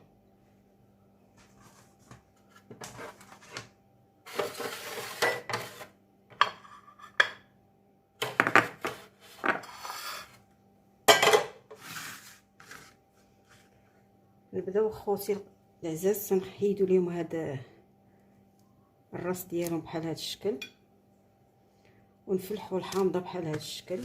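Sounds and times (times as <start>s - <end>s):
dishes and utensils clattering: 11.1s - 11.6s.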